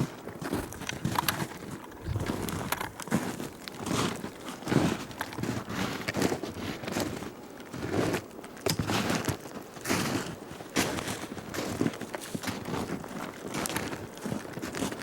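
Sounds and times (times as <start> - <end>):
footsteps crunching through brush: 0.4 - 7.1.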